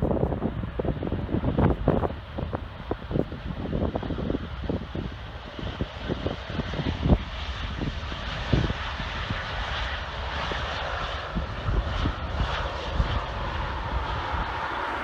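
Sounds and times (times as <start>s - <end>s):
wind buffeting microphone: 0.0s - 15.0s
jet engine rushing: 3.9s - 15.0s.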